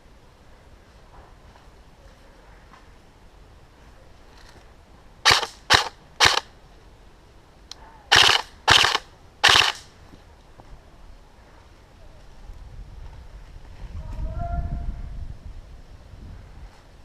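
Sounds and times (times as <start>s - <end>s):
airsoft guns firing bursts: 5.3s - 6.5s, 8.1s - 9.9s.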